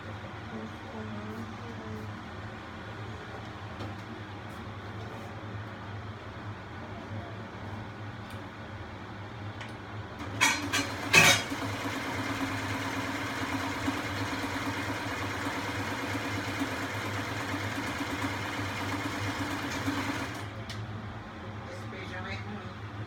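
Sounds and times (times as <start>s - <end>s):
sewing machine motor humming: 10.2s - 20.6s.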